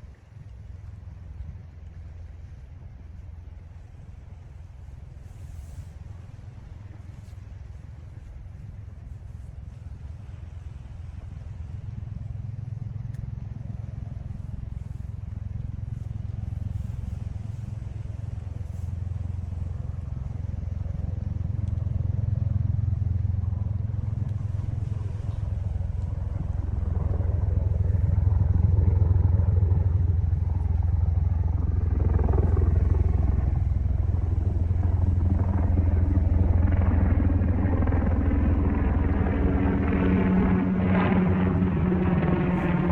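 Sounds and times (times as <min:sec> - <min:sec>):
vehicle engine rumbling: 0:13.7 - 0:42.9.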